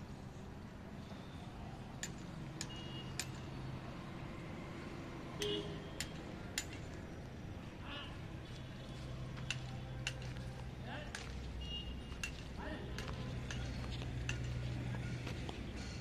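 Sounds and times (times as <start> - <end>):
sharp metallic taps: 12.1 - 14.7.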